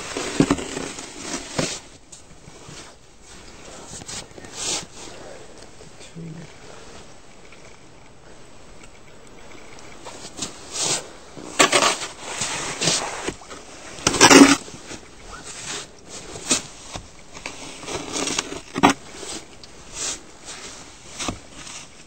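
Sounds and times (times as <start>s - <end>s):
shovel scraping packed snow: 0.0s - 5.6s, 10.0s - 22.0s.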